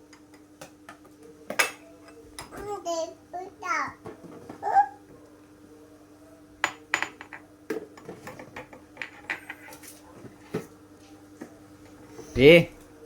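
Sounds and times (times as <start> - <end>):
faint steady hum: 0.0 - 13.0
spoon clinking against dishes: 6.6 - 9.9.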